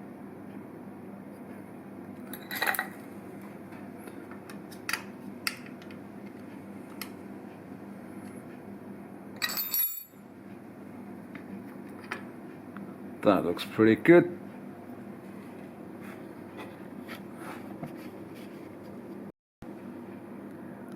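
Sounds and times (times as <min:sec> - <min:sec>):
steady low hum: 0:00.0 - 0:20.9
metal tools clinking: 0:02.3 - 0:03.0, 0:09.4 - 0:10.1.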